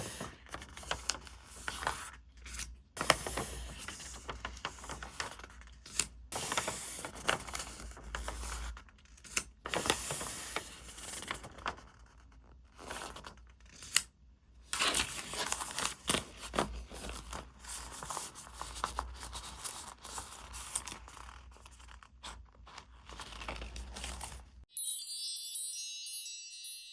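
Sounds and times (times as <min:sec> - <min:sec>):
paper rustling: 0:00.0 - 0:08.9, 0:14.8 - 0:24.5.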